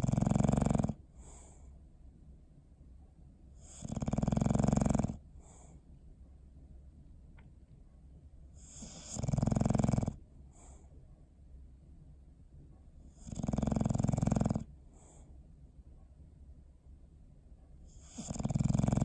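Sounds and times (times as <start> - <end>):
dog snoring: 0.0 - 1.6, 3.6 - 5.8, 8.6 - 10.8, 13.1 - 15.3, 17.9 - 19.0.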